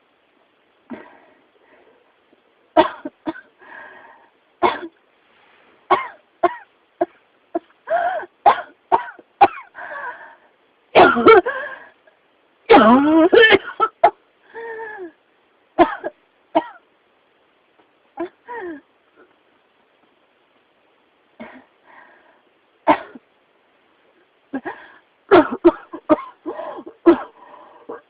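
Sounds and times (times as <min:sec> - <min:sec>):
person coughing: 0:02.8 - 0:03.5, 0:11.0 - 0:11.5, 0:15.8 - 0:16.8, 0:21.4 - 0:21.7, 0:22.9 - 0:23.2, 0:24.6 - 0:28.0.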